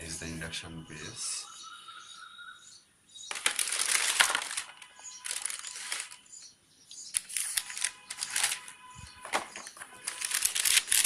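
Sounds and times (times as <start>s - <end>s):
packaging wrap crinkling: 3.3s - 6.3s, 7.1s - 11.0s.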